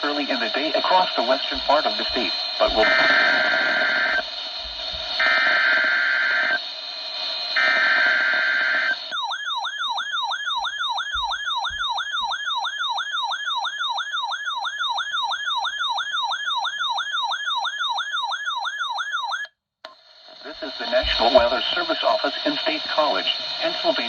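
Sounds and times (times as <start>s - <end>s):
radio hiss: 0.0s - 7.6s, 19.9s - 24.0s
digital data tone screech: 0.3s - 4.2s
electronic siren alarm warbling: 0.3s - 4.3s, 5.2s - 6.6s, 7.6s - 19.5s.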